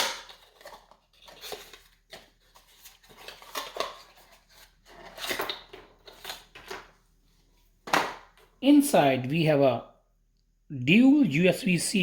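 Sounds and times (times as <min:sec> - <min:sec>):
rustling and scraping: 0:00.3 - 0:07.8.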